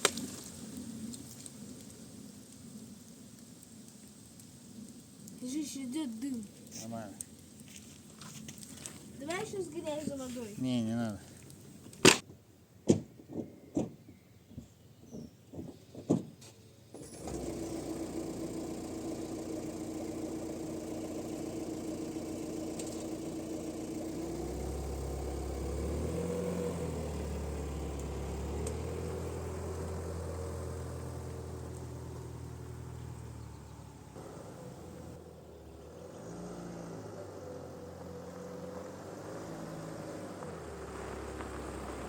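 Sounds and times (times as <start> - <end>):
engine running: 16.9 - 42.0.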